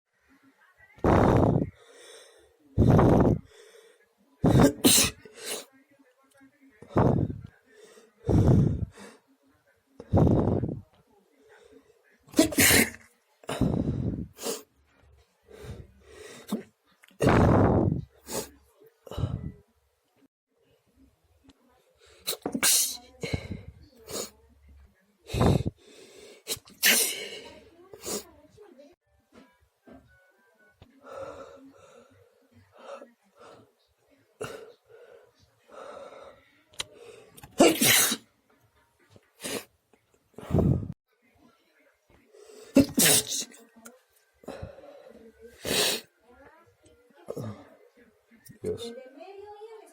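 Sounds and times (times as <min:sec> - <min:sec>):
person sneezing: 0:04.4 - 0:05.7, 0:12.3 - 0:14.6, 0:22.2 - 0:24.3, 0:26.5 - 0:28.3, 0:37.4 - 0:38.2, 0:42.7 - 0:43.6, 0:45.6 - 0:46.1
person catching breaths: 0:06.8 - 0:09.2, 0:13.5 - 0:14.6, 0:19.1 - 0:19.6, 0:23.2 - 0:24.3, 0:25.3 - 0:28.3, 0:40.4 - 0:41.0.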